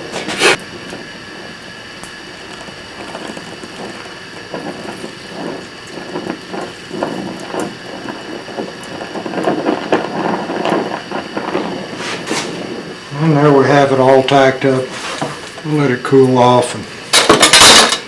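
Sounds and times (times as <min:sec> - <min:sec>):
welding torch hissing and crackling: 0:00.0 - 0:18.0.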